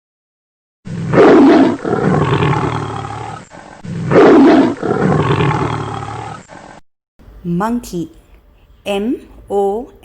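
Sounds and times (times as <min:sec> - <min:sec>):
tiger roaring and growling: 0:00.9 - 0:06.8.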